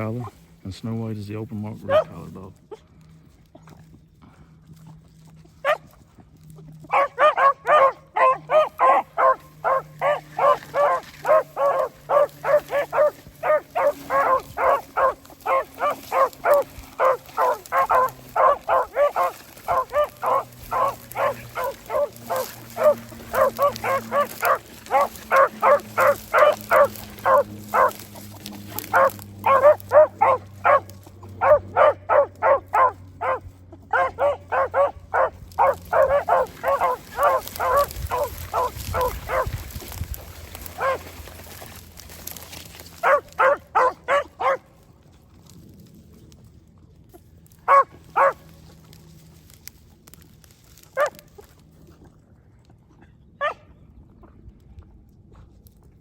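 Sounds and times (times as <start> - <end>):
hounds baying: 1.7 - 2.8, 5.3 - 44.6, 47.6 - 49.0, 51.0 - 51.3.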